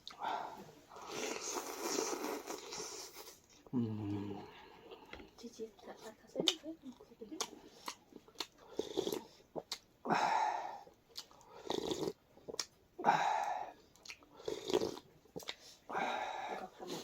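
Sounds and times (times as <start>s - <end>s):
person slurping soup: 0.9s - 5.1s, 8.7s - 9.3s, 11.5s - 12.2s, 14.4s - 15.0s
chewing: 0.9s - 9.9s, 10.8s - 12.8s, 13.8s - 15.8s.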